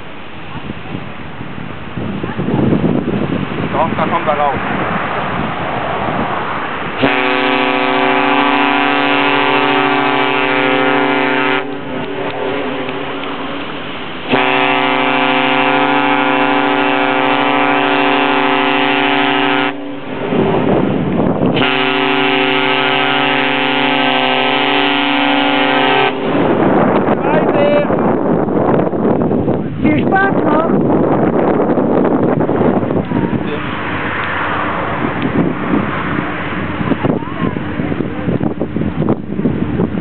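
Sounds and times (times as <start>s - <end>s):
ship horn blasts: 6.9s - 27.2s.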